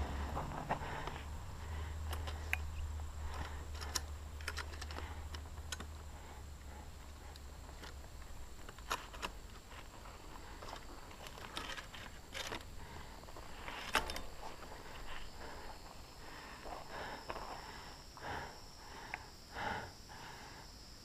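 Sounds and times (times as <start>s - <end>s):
low rumble: 0.0s - 8.7s.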